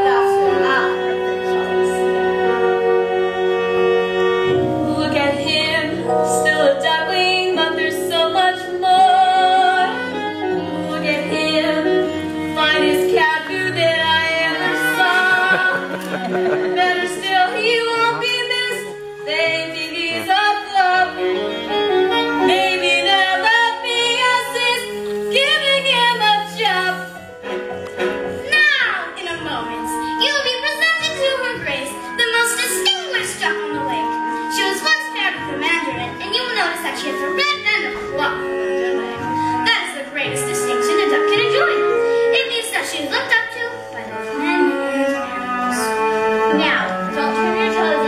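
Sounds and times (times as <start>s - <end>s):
instrumental accompaniment: 0.0s - 48.0s
woman singing: 4.7s - 15.9s, 16.6s - 21.3s, 22.3s - 27.2s.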